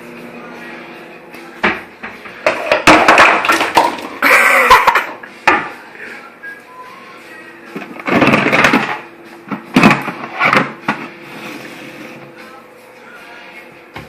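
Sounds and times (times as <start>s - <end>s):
dishes knocking and clattering: 1.6s - 5.7s, 8.1s - 11.1s.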